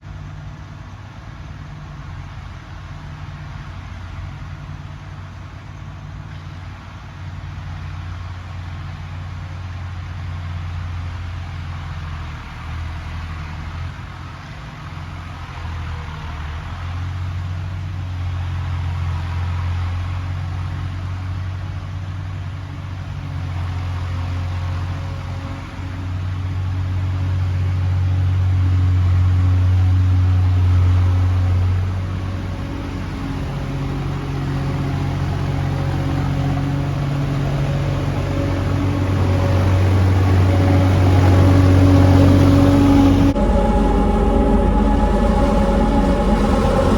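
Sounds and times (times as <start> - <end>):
diesel engine running: 20.6 - 46.9.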